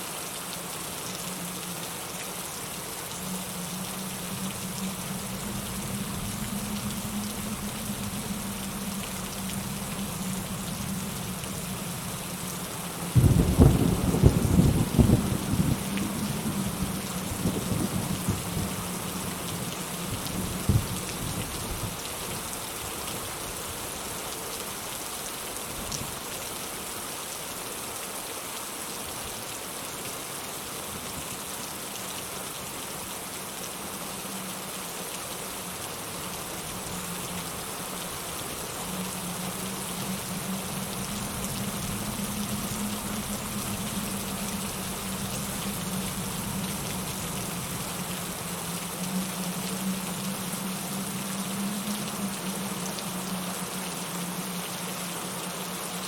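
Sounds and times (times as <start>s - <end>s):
rain pattering: 0.0s - 56.0s
low thunder rumble: 13.0s - 21.9s, 38.9s - 48.6s.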